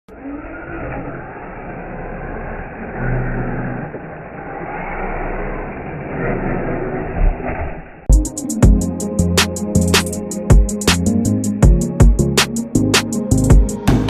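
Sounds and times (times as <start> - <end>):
vehicle engine rumbling: 0.1 - 9.4.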